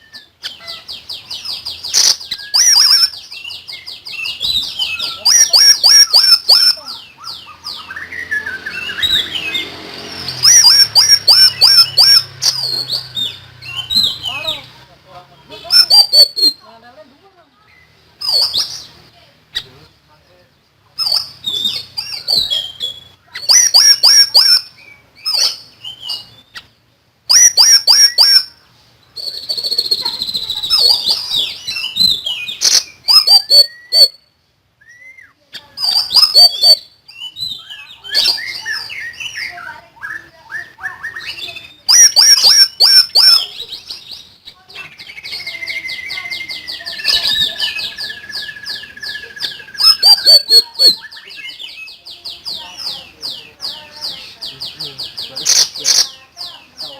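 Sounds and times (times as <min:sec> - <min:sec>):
songbird chattering: 0:00.0 - 0:56.9
bird whistled note: 0:33.1 - 0:34.2, 0:36.1 - 0:38.7, 0:46.4 - 0:51.2.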